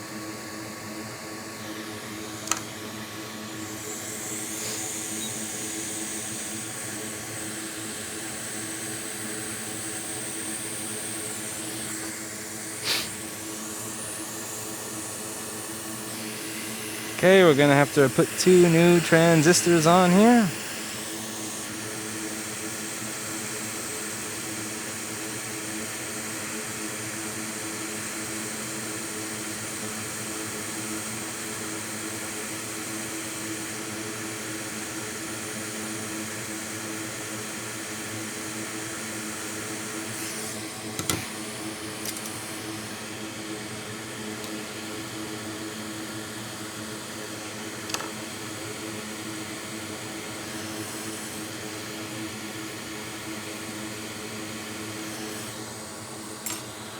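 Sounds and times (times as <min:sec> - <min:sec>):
faint hum: 0:16.1 - 0:20.7
tool clicks: 0:41.0 - 0:41.3, 0:42.0 - 0:42.4.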